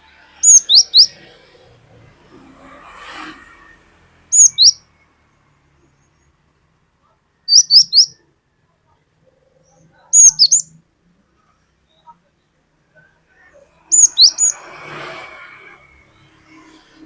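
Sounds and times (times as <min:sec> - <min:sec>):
bird whistling high notes: 0:04.3 - 0:04.8, 0:07.5 - 0:08.1, 0:13.9 - 0:14.6.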